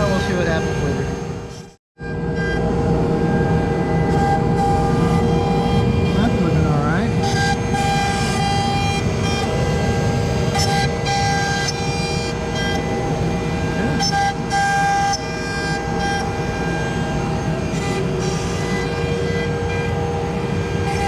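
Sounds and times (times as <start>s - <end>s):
higher motor tones: 0.0s - 21.0s
router spindle whine: 0.0s - 21.0s.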